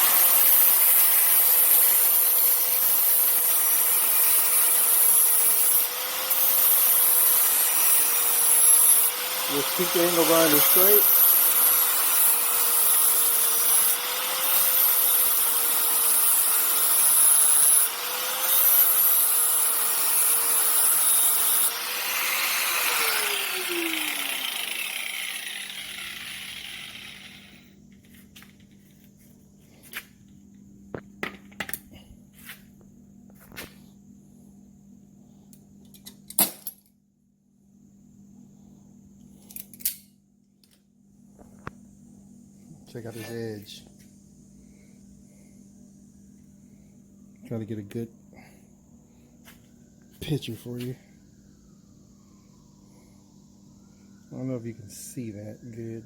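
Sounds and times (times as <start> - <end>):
angle grinder grinding metal: 0.0 - 27.6
grinder winding down: 0.0 - 27.7.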